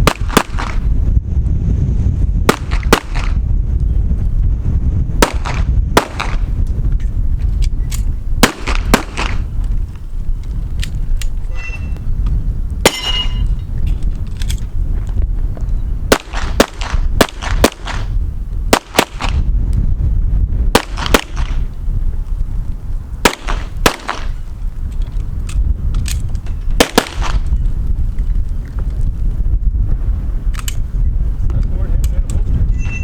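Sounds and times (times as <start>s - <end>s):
pistol shots: 0.0s - 0.8s, 2.5s - 3.4s, 5.2s - 6.5s, 8.4s - 9.4s, 16.1s - 18.1s, 18.7s - 19.4s, 20.7s - 21.6s, 23.2s - 24.4s, 26.8s - 27.5s.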